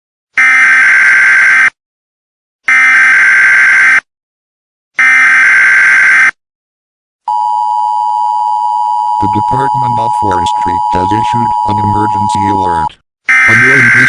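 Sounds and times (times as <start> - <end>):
harsh buzzing data bursts: 13.5 - 14.0.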